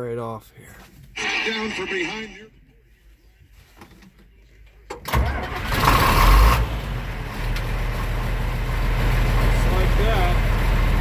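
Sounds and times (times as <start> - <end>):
diesel engine starting and idling: 5.0 - 11.0.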